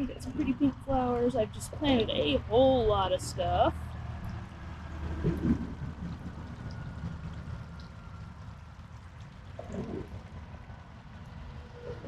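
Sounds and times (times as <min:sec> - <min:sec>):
low rumble: 0:00.0 - 0:12.0
water trickling: 0:00.0 - 0:12.0.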